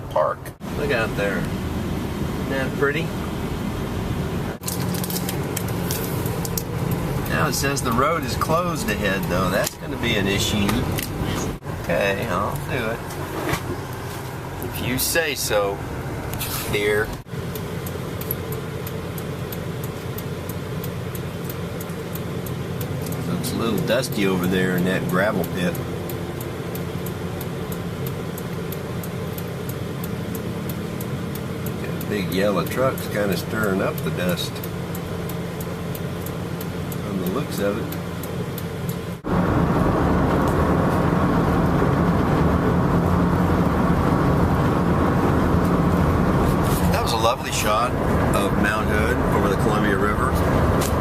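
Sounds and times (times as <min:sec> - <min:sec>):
car road and engine noise: 0:00.0 - 0:51.0
faint even ticking: 0:17.2 - 0:39.3.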